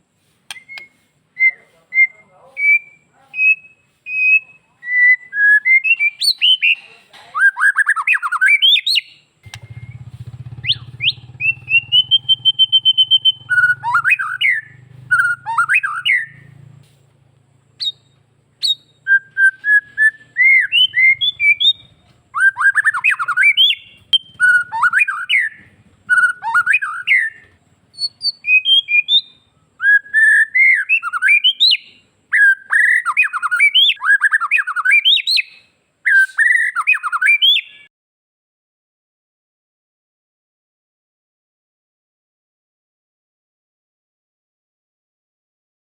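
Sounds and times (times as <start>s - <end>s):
songbird singing whistles: 0.2s - 16.8s, 17.7s - 37.9s
low hum: 9.4s - 19.0s.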